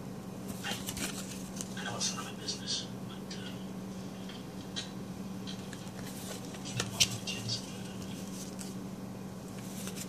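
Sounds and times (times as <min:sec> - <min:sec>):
steady low hum: 0:00.0 - 0:10.0
cards rustling: 0:00.4 - 0:02.0, 0:05.5 - 0:08.8, 0:09.4 - 0:10.0.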